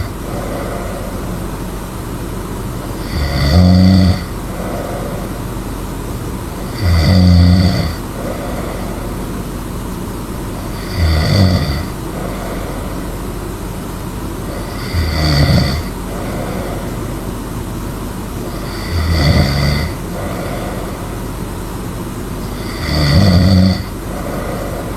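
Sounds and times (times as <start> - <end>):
person snoring loudly: 0.0 - 1.6, 2.9 - 5.5, 6.6 - 9.4, 10.5 - 13.3, 14.4 - 17.2, 18.4 - 21.4, 22.4 - 24.9.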